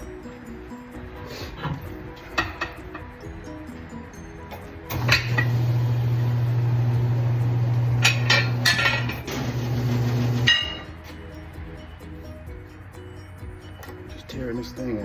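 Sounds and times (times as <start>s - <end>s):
faint background music: 0.0s - 15.0s
low motor hum: 5.0s - 10.5s.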